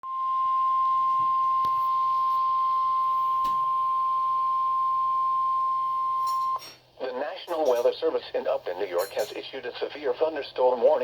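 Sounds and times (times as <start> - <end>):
steady alarm beep: 0.1 - 6.7.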